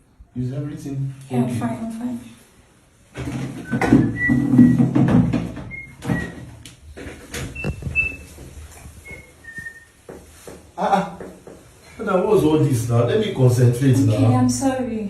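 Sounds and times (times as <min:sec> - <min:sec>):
knocking and rustling handling noise: 0:03.1 - 0:11.9
person whistling high notes: 0:03.7 - 0:04.8, 0:05.7 - 0:06.4, 0:09.0 - 0:10.0.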